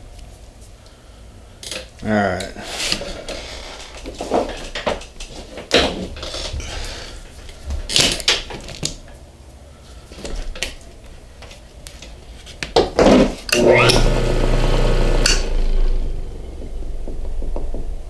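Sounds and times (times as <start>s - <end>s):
bench grinder motor humming: 13.5s - 17.4s.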